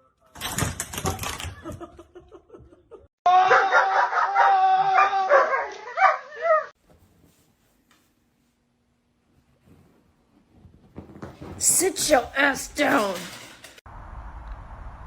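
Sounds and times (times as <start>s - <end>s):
dog howling: 3.3s - 6.7s.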